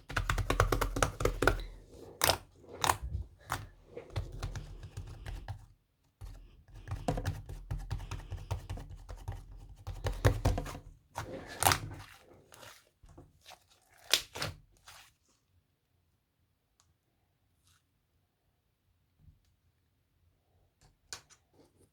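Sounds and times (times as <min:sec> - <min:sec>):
whisk clicking and scraping bowl: 0:00.0 - 0:14.2.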